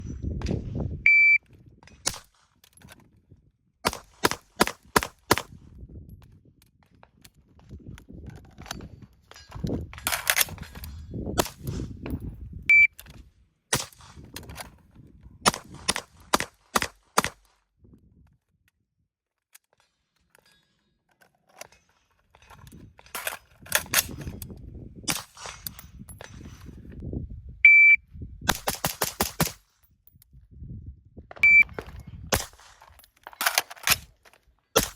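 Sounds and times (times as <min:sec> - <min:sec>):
rifle shots: 0:15.5 - 0:17.4.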